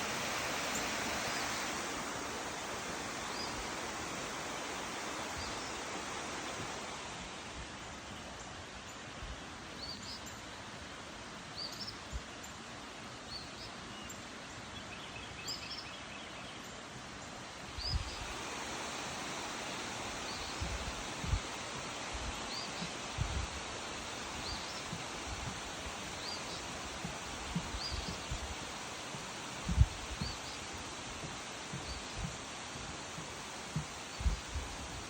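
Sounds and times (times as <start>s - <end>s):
waterfall rushing: 0.0s - 7.6s, 17.5s - 35.0s.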